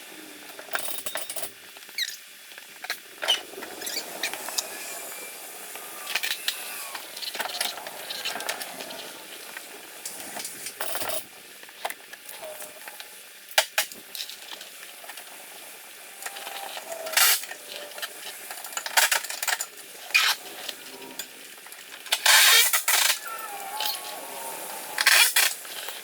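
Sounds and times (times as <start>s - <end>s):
metal parts clinking and scraping: 10.8s - 11.2s, 25.0s - 25.5s.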